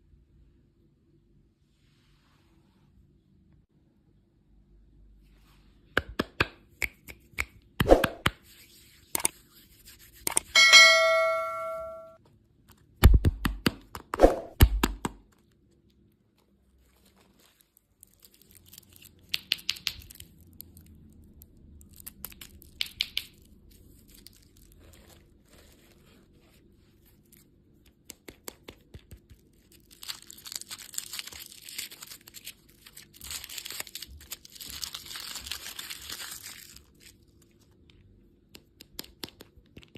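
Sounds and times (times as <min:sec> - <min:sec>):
ringing ding: 0:10.6 - 0:12.2
plastic wrappers crinkling and tearing: 0:16.3 - 0:26.3, 0:29.2 - 0:37.8.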